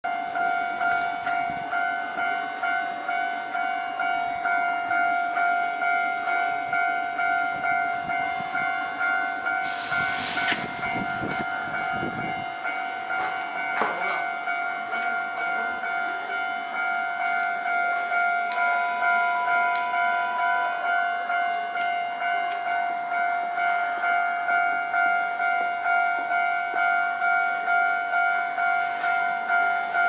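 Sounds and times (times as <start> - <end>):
level-crossing warning bell ringing: 0.0 - 30.0
tram rumbling past: 0.1 - 30.0
brief hiss: 9.6 - 10.8.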